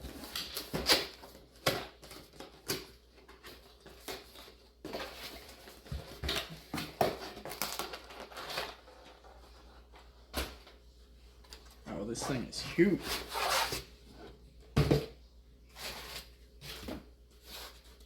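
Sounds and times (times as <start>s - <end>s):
knocks and clicks of packaging: 0.0s - 9.2s
cardboard packaging rustling: 0.0s - 10.8s, 15.6s - 18.0s.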